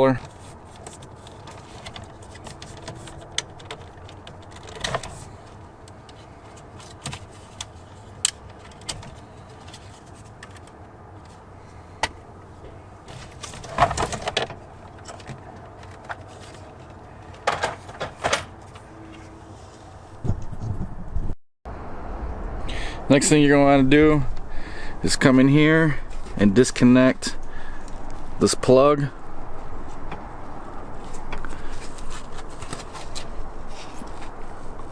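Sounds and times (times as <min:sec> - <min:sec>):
plastic parts clicking and rattling: 0:00.2 - 0:05.3, 0:13.1 - 0:18.5.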